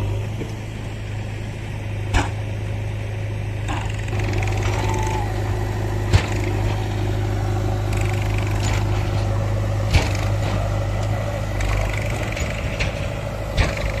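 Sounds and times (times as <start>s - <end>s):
diesel engine running: 0.0s - 14.0s
sharp metallic knocks: 3.7s - 14.0s.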